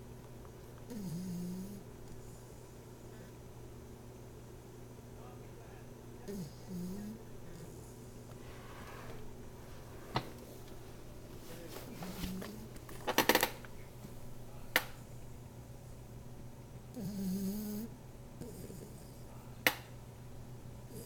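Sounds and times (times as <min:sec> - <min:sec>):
dog snoring: 0:00.9 - 0:02.7, 0:06.2 - 0:09.2, 0:12.0 - 0:12.7, 0:16.9 - 0:19.4.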